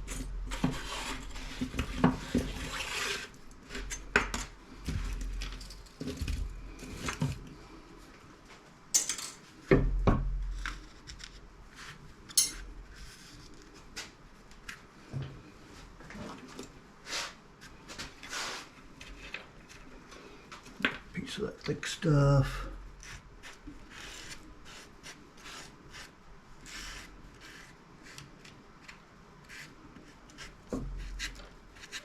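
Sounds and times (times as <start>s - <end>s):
scrap metal clinking: 9.0s - 9.4s, 12.3s - 12.7s.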